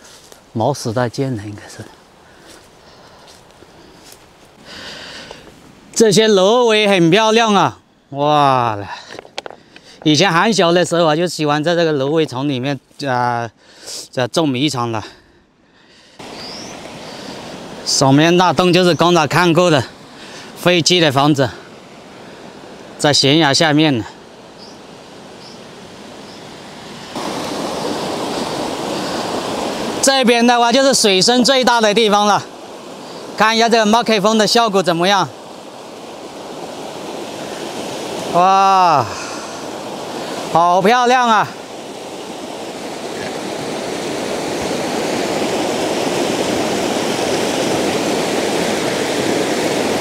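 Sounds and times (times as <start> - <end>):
creek water rushing: 0.0 - 15.2, 15.8 - 50.0.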